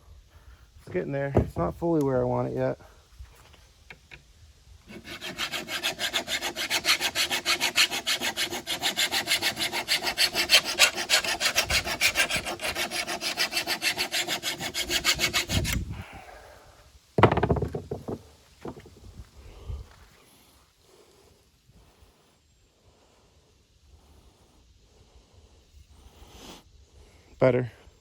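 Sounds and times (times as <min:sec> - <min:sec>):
file rasping on steel blade: 0:04.9 - 0:15.8.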